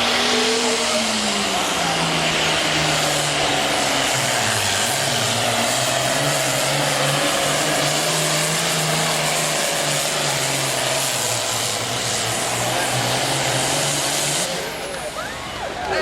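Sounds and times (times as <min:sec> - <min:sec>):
tractor diesel engine running: 0:00.0 - 0:16.0.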